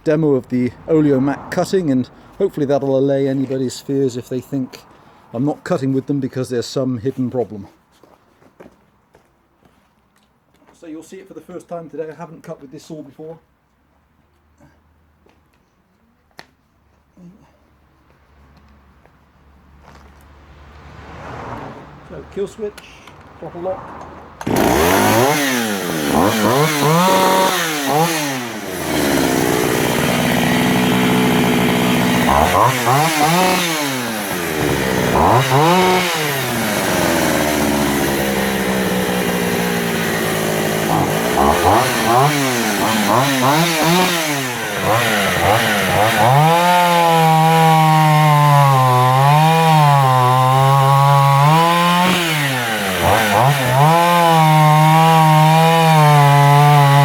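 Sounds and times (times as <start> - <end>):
chainsaw cutting wood: 24.4 - 57.0
chainsaw revving: 24.4 - 57.0.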